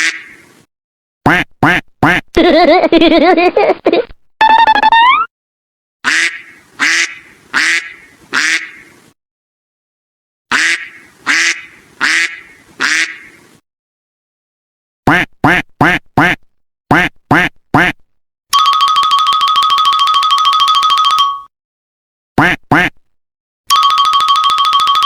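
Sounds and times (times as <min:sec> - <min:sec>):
duck quacking: 0:00.0 - 0:00.5, 0:01.3 - 0:02.3, 0:06.0 - 0:09.0, 0:10.5 - 0:13.5, 0:15.1 - 0:18.0, 0:22.4 - 0:23.0.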